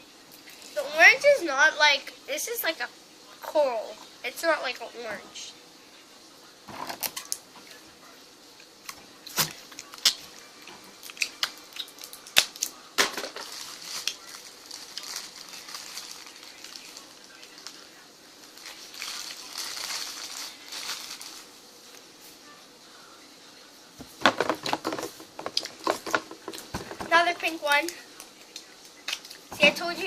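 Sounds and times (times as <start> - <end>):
rustling handling noise: 13.2 - 17.8, 18.5 - 22.4, 24.0 - 28.0
plastic tubs clicking: 24.2 - 27.2.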